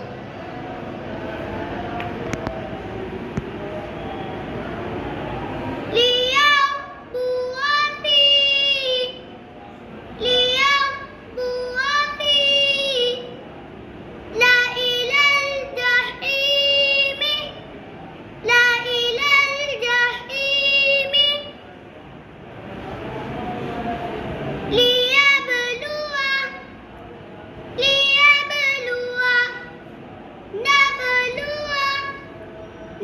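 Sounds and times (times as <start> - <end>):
boy chanting syllables: 5.8 - 9.3, 10.2 - 13.4, 14.3 - 17.7, 18.4 - 21.7, 23.6 - 26.8, 27.7 - 32.4.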